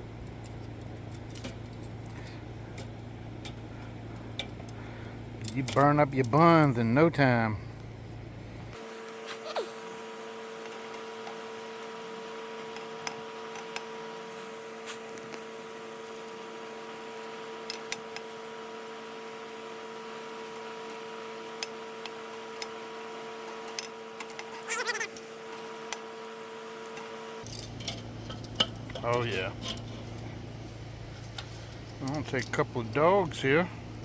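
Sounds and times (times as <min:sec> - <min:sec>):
electric fan humming: 0:00.0 - 0:34.0
short wavering squeal: 0:24.6 - 0:25.1.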